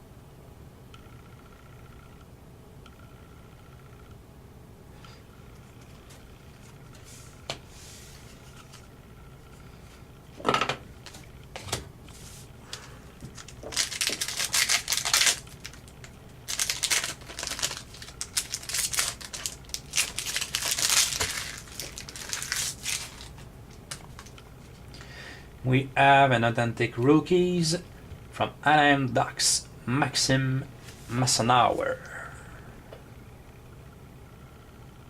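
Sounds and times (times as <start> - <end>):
foil wrapper crinkling and tearing: 13.3 - 24.3.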